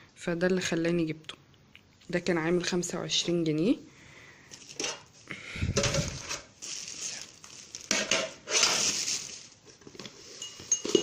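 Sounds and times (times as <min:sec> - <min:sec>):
drinking glasses knocking and scraping: 0:10.4 - 0:11.0.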